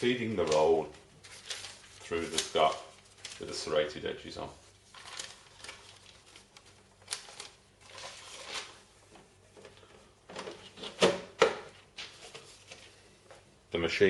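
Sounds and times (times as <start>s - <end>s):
paper rustling: 0.0s - 4.0s, 4.6s - 8.9s.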